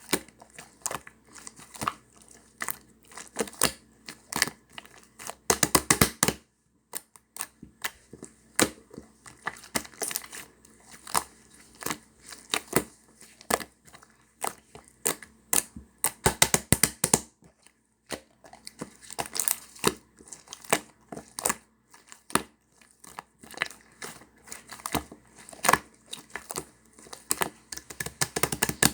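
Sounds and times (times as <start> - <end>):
sticky pops and crackling clicks: 15.1 - 17.3, 27.4 - 28.9
slime squished by hand: 18.1 - 28.9.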